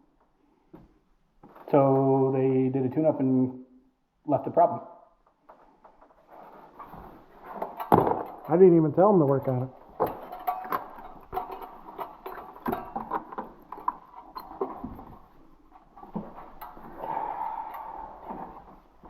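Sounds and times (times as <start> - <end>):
rustling and scraping: 5.4 - 19.0
hand tools clicking and clinking: 6.9 - 19.0.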